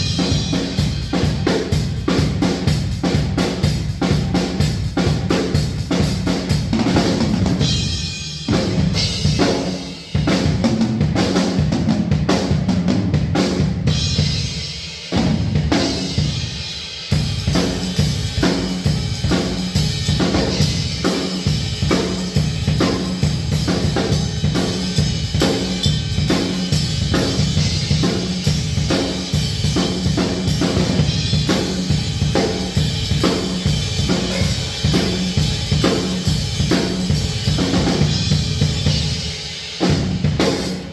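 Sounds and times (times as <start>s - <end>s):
cymbals: 0.0s - 10.5s, 13.9s - 40.9s
drum kit playing: 0.0s - 40.9s.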